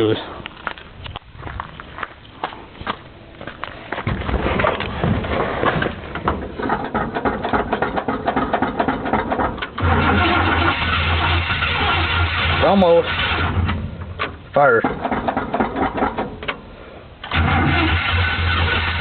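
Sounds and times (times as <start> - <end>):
engine firing: 4.1 - 16.4, 17.2 - 19.0
engine cranking on starter: 5.8 - 16.6, 17.2 - 19.0.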